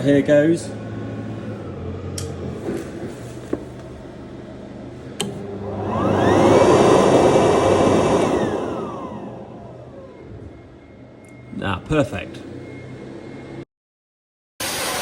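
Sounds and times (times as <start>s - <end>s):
electric air pump whining: 5.0s - 10.8s, 14.6s - 15.0s
switch click: 5.2s - 5.4s
rushing blow of air: 5.6s - 9.4s.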